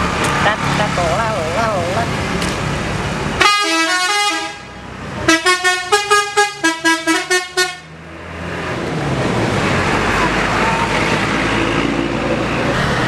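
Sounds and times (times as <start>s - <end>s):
bus melody horn playing a tune: 3.4s - 7.9s.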